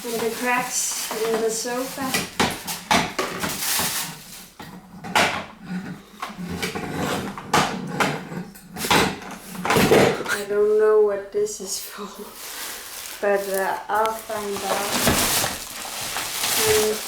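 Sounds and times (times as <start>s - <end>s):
packaging rustling: 0.0s - 4.6s, 12.0s - 17.0s
plastic attachments clattering: 0.0s - 5.5s, 12.3s - 17.0s.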